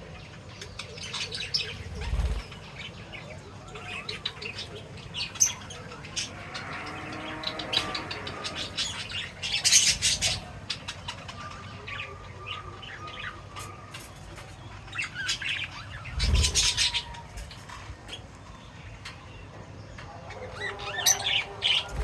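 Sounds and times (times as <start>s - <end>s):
pet birds chirping: 0.0s - 22.0s.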